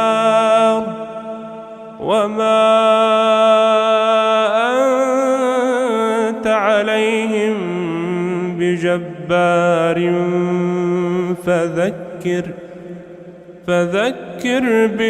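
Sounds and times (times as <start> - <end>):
man reciting melodically: 0.0 - 15.0.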